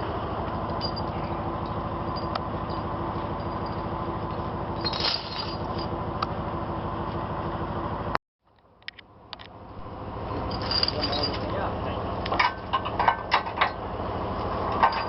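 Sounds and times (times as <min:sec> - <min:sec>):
truck engine idling: 0:00.0 - 0:15.0
rattle: 0:00.6 - 0:05.9, 0:10.4 - 0:11.6, 0:14.7 - 0:15.0.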